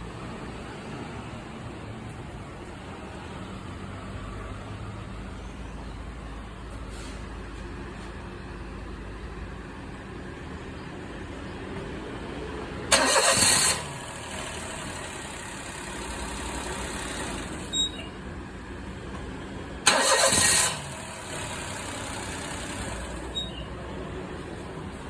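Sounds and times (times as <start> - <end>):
engine running: 2.3 - 25.0
engine starter cranking: 12.9 - 18.1, 19.8 - 23.6.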